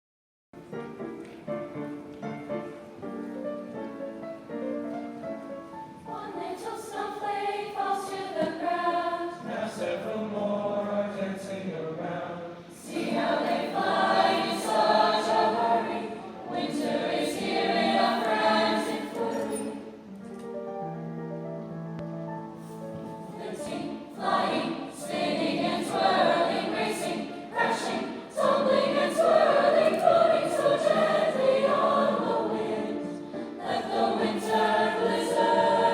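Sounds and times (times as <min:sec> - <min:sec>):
chorus singing: 0:05.8 - 0:20.1, 0:23.1 - 0:35.9.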